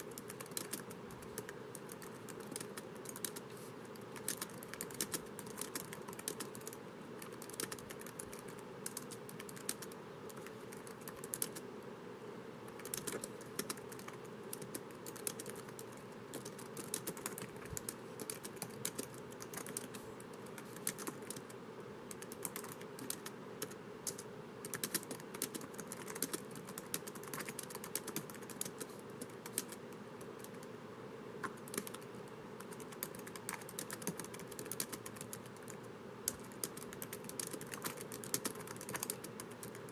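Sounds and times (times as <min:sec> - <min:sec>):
typing on laptop keyboard: 0:00.0 - 0:11.6, 0:12.7 - 0:30.7, 0:31.4 - 0:39.9
faint background hum: 0:00.0 - 0:39.9.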